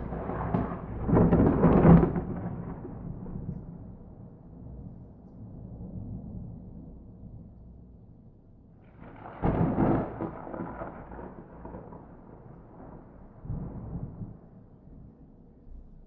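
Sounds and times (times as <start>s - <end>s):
thunder rumble: 0.0s - 7.6s, 8.8s - 15.2s
lightning strike crack: 9.0s - 12.9s.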